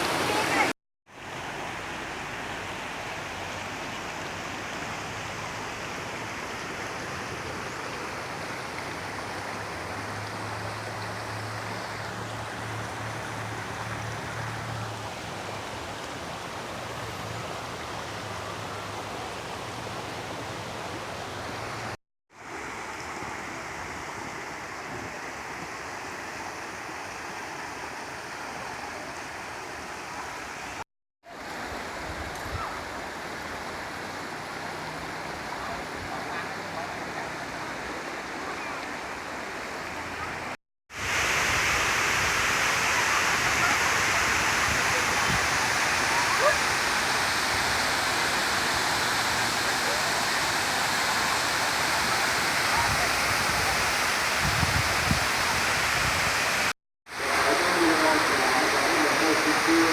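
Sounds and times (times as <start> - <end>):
water rushing over rocks: 0.0 - 59.9.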